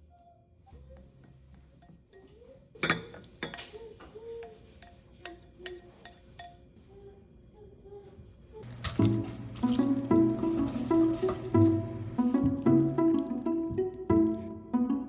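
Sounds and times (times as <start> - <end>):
kitchenware clinking and knocking: 1.8 - 6.6, 8.7 - 14.6.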